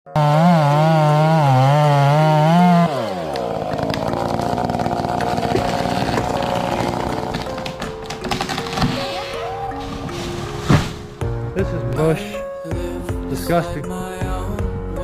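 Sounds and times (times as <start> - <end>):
chainsaw revving and idling: 0.1 - 8.8.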